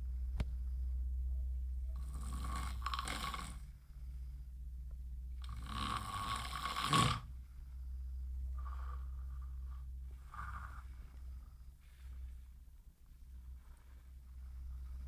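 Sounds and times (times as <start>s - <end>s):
steady low hum: 0.0s - 15.0s
person snoring: 2.0s - 3.6s, 5.5s - 7.3s.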